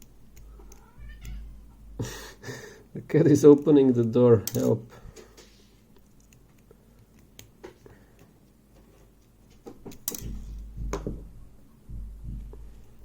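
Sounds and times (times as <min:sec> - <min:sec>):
dull low thumps: 0:10.6 - 0:12.8.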